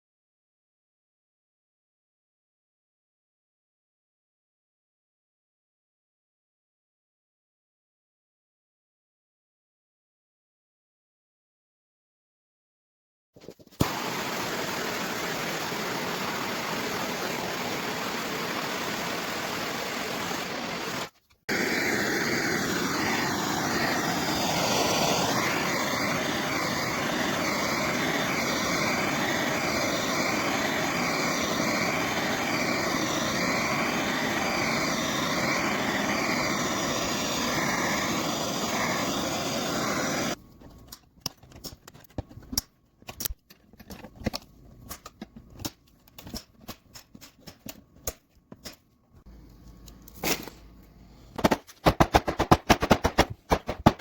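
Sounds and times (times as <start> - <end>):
heat gun blowing: 13.8 - 40.4, 51.4 - 54.0.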